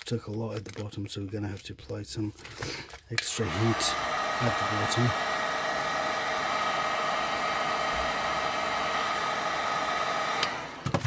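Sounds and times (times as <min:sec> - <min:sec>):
hot-air blower running: 0:03.2 - 0:11.0.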